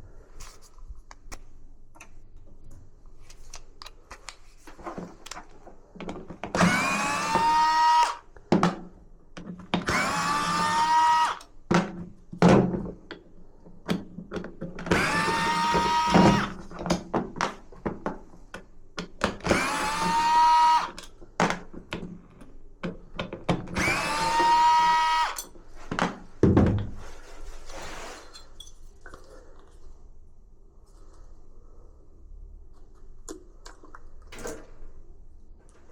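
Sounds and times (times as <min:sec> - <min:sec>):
power tool whining: 0:06.6 - 0:08.3, 0:09.8 - 0:11.5, 0:14.9 - 0:16.7, 0:19.4 - 0:21.0, 0:23.8 - 0:25.5.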